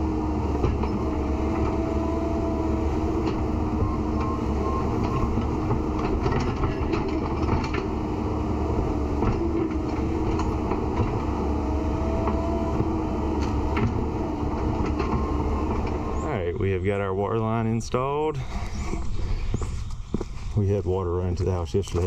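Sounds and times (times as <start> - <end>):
vehicle engine running: 0.0 - 17.6.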